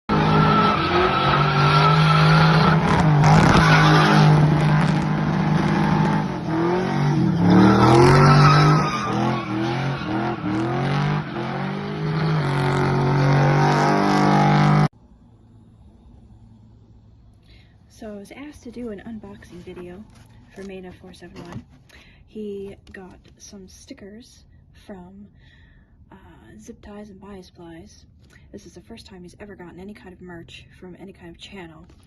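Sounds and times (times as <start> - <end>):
car engine revving: 0.0 - 17.4.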